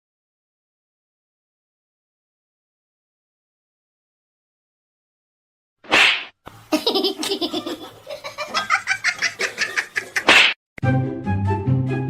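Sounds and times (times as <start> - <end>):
person laughing: 6.6 - 10.4
music: 10.8 - 12.0.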